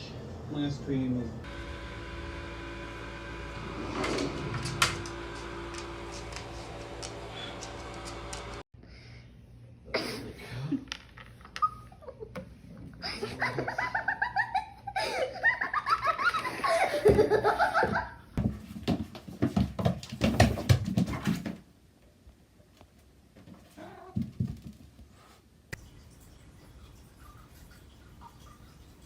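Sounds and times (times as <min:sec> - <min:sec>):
people laughing hard: 0:13.0 - 0:18.2.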